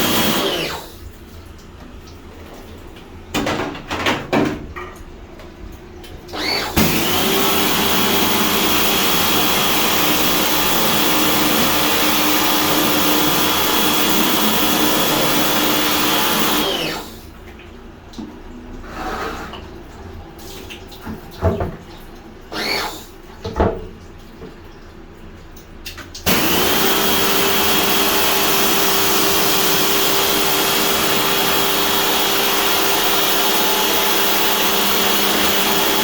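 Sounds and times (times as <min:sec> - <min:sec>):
machine motor whining and hissing: 0:06.4 - 0:17.2, 0:26.3 - 0:36.0.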